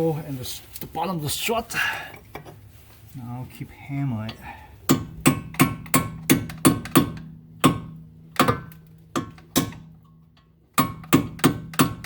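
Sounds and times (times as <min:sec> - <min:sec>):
hammer striking metal: 0:04.9 - 0:09.9, 0:10.8 - 0:12.0.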